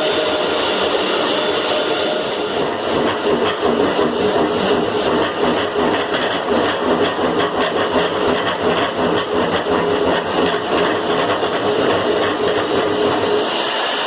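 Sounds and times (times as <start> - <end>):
boring machine cutting steel: 0.0 - 14.0.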